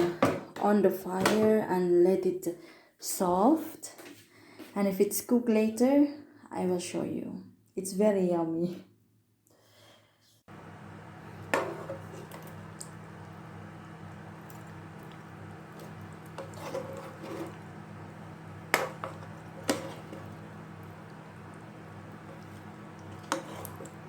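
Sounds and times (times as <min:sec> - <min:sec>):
steady low hum: 0:10.5 - 0:24.0.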